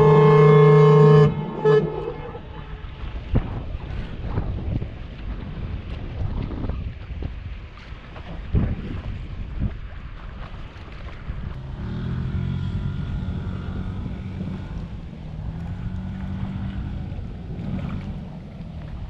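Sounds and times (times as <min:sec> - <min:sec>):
ship horn blast: 0:00.0 - 0:03.7, 0:11.6 - 0:18.4
water noise: 0:00.0 - 0:19.0
wind buffeting microphone: 0:00.0 - 0:19.0.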